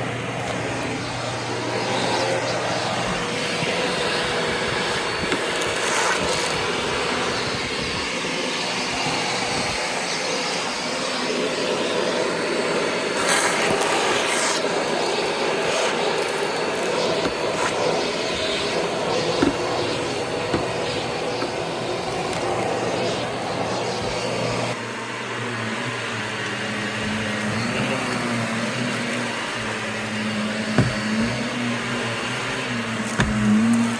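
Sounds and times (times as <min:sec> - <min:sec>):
vacuum cleaner running: 0:00.0 - 0:33.9.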